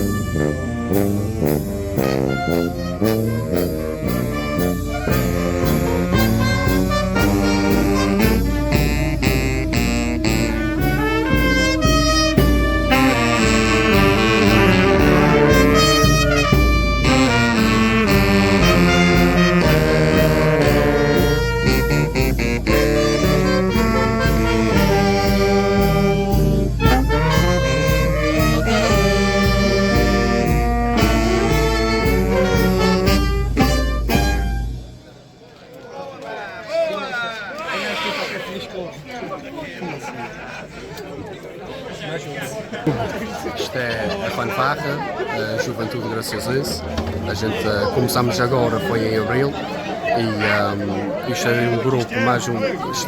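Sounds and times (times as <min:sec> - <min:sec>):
steady drumbeat: 0:00.0 - 0:35.2, 0:46.8 - 0:47.6
brass band playing a lively tune: 0:00.0 - 0:35.3, 0:42.9 - 0:53.0.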